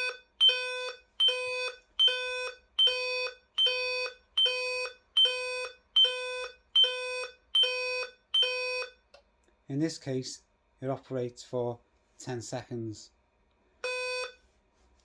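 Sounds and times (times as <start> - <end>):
electronic alarm beeping: 0.0 - 9.0, 13.8 - 14.4.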